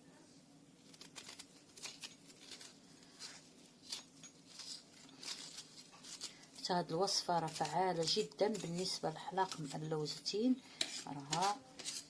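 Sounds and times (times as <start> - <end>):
knife scraping turnip flesh: 0.8 - 12.0.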